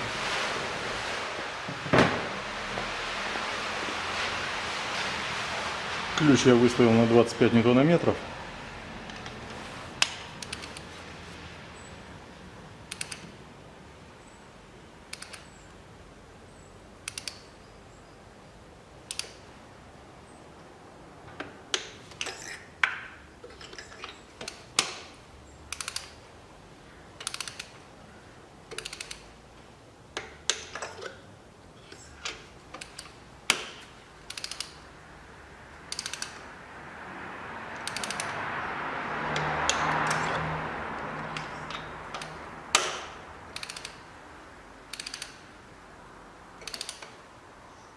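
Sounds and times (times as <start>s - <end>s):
rushing noise: 0.0s - 9.0s, 36.5s - 43.5s
torque wrench ratchet clicking: 25.7s - 26.2s, 27.2s - 27.7s, 28.7s - 29.2s, 34.3s - 34.8s, 35.9s - 36.4s, 37.8s - 38.3s, 43.6s - 44.0s, 44.9s - 45.4s, 46.6s - 47.1s.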